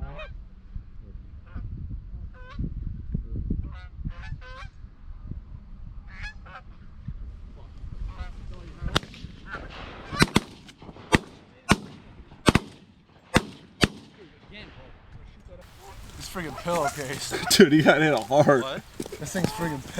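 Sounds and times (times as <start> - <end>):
shotgun blasts: 8.9 - 14.2
geese honking: 15.7 - 19.9.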